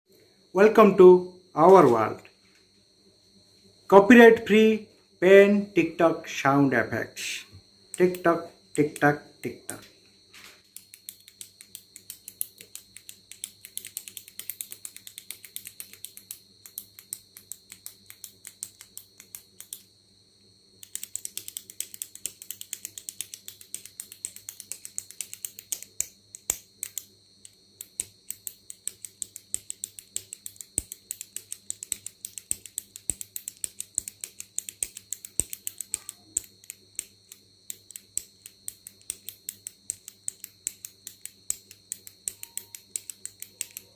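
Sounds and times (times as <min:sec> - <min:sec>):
click pen clicking: 0:07.9 - 0:09.9, 0:10.7 - 0:19.9, 0:20.8 - 0:43.9.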